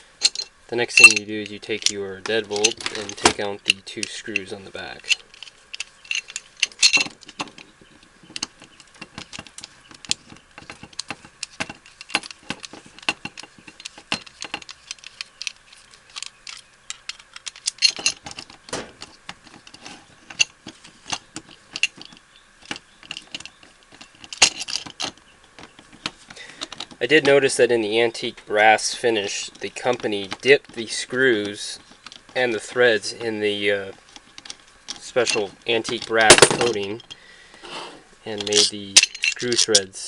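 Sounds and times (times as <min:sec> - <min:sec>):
small metal clicks and clinks: 0:00.2 - 0:07.7, 0:08.3 - 0:25.2, 0:38.4 - 0:39.9.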